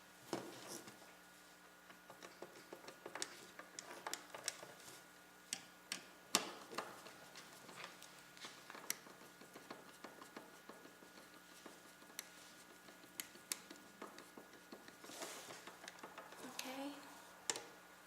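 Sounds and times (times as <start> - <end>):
screwdriver clicks and taps: 8.7 - 11.4, 12.9 - 15.0, 15.6 - 16.4, 17.5 - 17.7.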